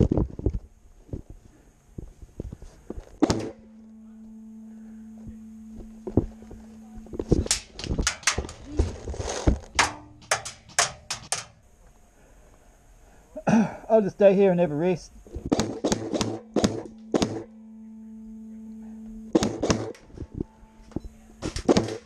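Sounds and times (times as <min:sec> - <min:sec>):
low steady hum: 0:00.0 - 0:22.0
airsoft guns firing: 0:03.2 - 0:03.6, 0:09.7 - 0:11.6, 0:15.5 - 0:17.5, 0:19.3 - 0:20.0, 0:21.5 - 0:22.0.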